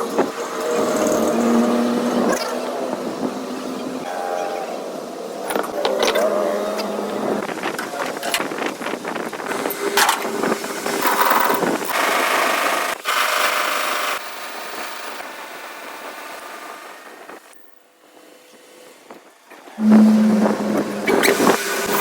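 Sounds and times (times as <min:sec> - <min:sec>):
power tool running: 0:19.8 - 0:22.0.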